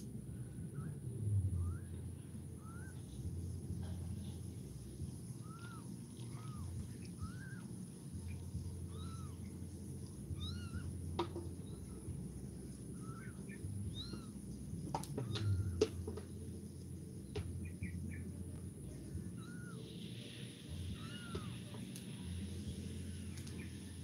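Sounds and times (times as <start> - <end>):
kitten mewing: 8.9 - 9.4, 10.3 - 10.9, 13.9 - 14.3, 20.9 - 21.6.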